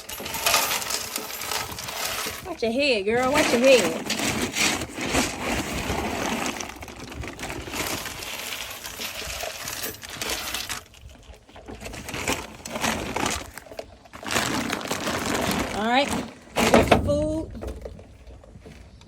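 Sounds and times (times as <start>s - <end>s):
feed pellets pouring: 0.0s - 2.4s, 3.6s - 10.8s.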